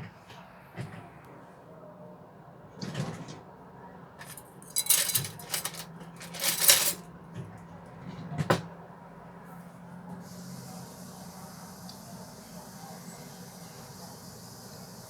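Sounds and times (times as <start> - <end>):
spoon clinking and scraping on plate: 4.2 - 7.0.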